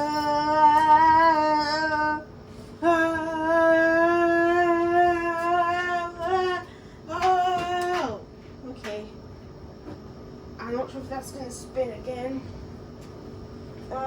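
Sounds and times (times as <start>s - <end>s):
child humming: 0.0s - 2.2s.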